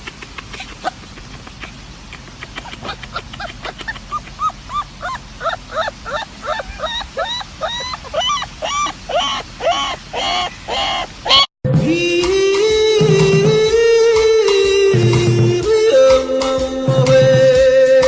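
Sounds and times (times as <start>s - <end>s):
small dog yipping: 0.0s - 11.5s.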